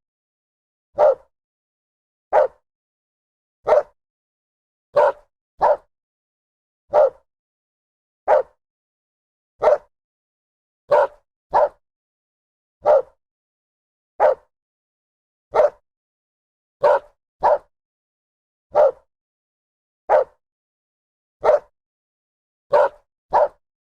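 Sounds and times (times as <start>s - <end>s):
dog barking: 1.0s - 1.3s, 2.3s - 2.6s, 3.6s - 4.0s, 4.9s - 5.9s, 6.9s - 7.3s, 8.3s - 8.6s, 9.6s - 9.9s, 10.9s - 11.8s, 12.8s - 13.2s, 14.2s - 14.5s, 15.5s - 15.8s, 16.8s - 17.7s, 18.7s - 19.1s, 20.1s - 20.4s, 21.4s - 21.7s, 22.7s - 23.6s.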